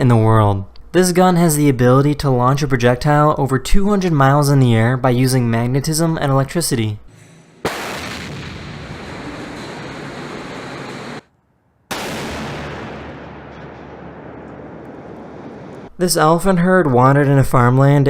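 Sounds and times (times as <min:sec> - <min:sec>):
railgun blast with rumble: 0:07.6 - 0:15.9.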